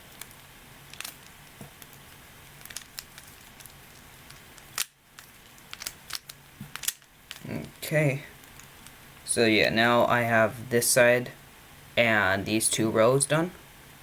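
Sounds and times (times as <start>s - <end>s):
puzzle cube plastic clicks: 2.7s - 7.8s.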